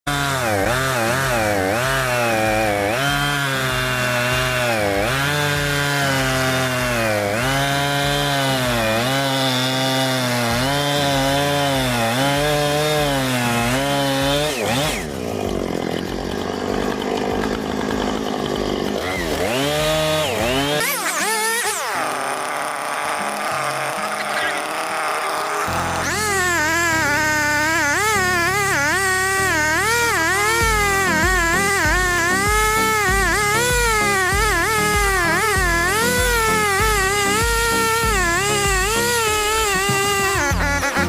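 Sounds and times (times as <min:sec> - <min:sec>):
chainsaw cutting wood: 0:00.0 - 0:41.0.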